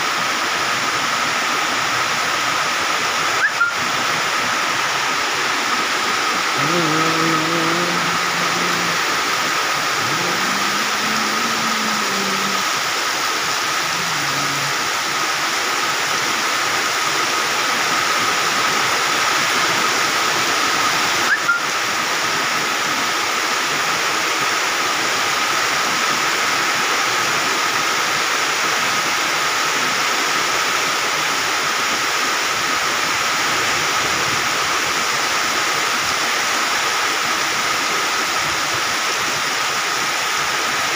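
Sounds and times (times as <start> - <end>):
heavy rain and wind: 0.0 - 40.9.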